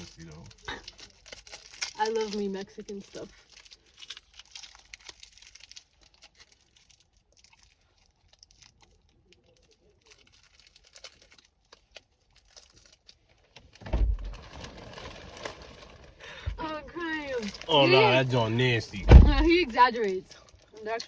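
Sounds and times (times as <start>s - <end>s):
plastic snack packet crinkling: 0.0s - 16.4s, 17.1s - 19.0s, 19.7s - 21.0s
loud low bump: 19.0s - 19.6s.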